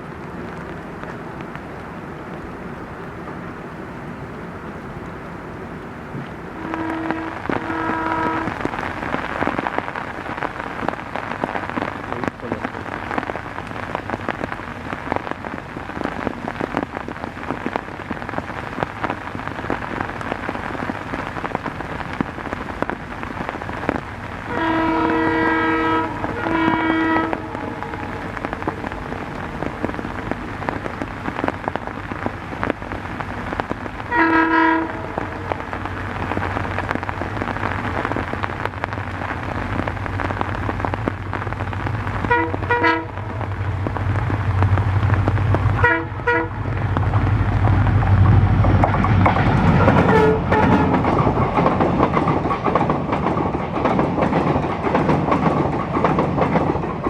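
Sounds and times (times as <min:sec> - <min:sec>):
rain: 0:00.0 - 0:57.0
train engine drone and rumble: 0:00.0 - 0:57.0
locomotive horn: 0:06.5 - 0:08.7, 0:24.5 - 0:28.6, 0:34.1 - 0:35.7, 0:42.3 - 0:43.4, 0:45.8 - 0:46.6, 0:49.8 - 0:51.0.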